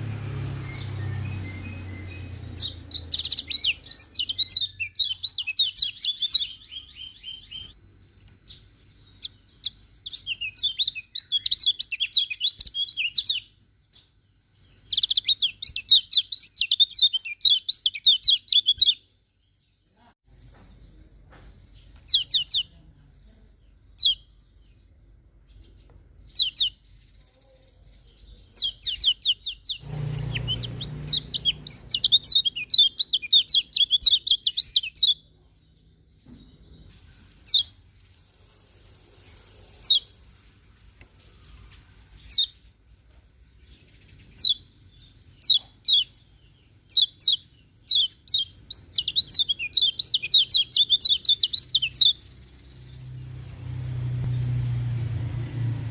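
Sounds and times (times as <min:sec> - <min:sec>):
bird chirping and singing: 0:00.0 - 0:36.9, 0:42.2 - 0:42.6, 0:43.6 - 0:53.4
brief low rumble: 0:53.2 - 0:55.9.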